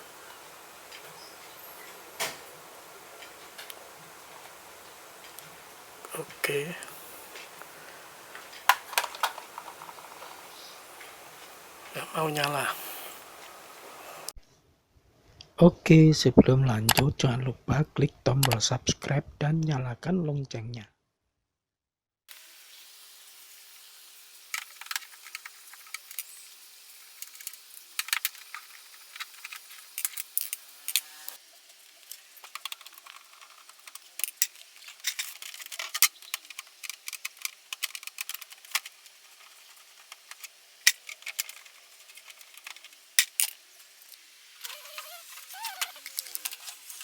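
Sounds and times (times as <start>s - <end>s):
faint steady hum: 0.0s - 20.2s
small tools clicking and rattling: 8.4s - 10.4s, 27.2s - 31.1s, 32.0s - 47.0s.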